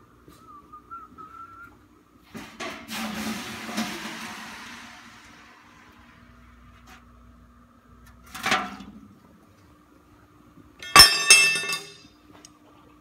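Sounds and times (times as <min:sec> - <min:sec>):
metallic clang: 0:10.8 - 0:12.1.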